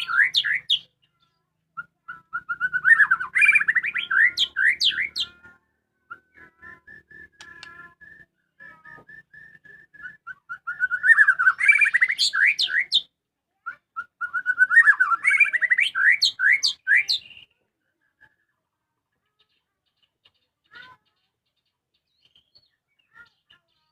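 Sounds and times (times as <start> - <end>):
bird whistling and trilling: 0.0 - 0.9, 1.7 - 5.4, 6.0 - 17.5.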